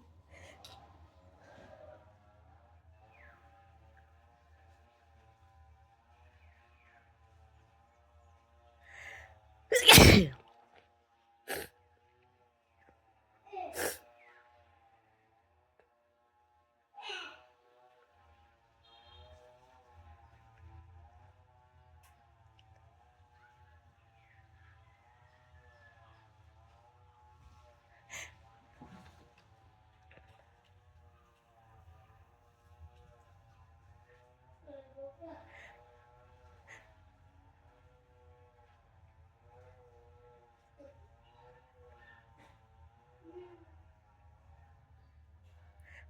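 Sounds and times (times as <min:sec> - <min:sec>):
sniff: 0:09.0 - 0:10.3, 0:11.5 - 0:11.7, 0:13.8 - 0:14.0
person sneezing: 0:09.7 - 0:10.3, 0:11.5 - 0:11.7, 0:13.8 - 0:14.0.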